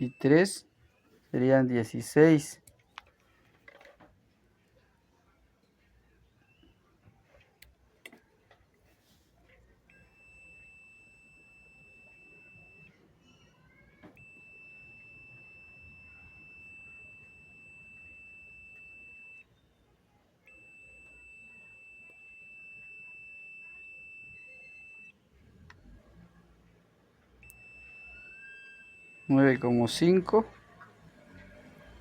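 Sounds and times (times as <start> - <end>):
multimeter continuity beep: 0.0 - 0.7, 9.9 - 13.0, 14.2 - 19.8, 20.5 - 25.2, 27.4 - 30.2.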